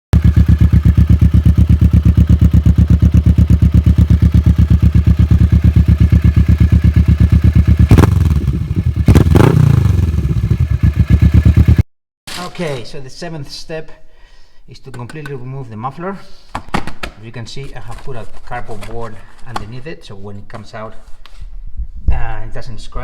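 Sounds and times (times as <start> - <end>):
motorcycle engine idling and revving: 0.1 - 11.8.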